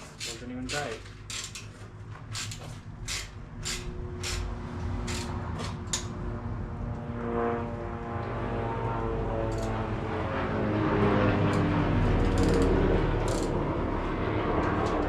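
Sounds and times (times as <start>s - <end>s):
hand tools clinking on bolts: 0.0s - 5.3s
low engine-like drone: 0.0s - 15.0s.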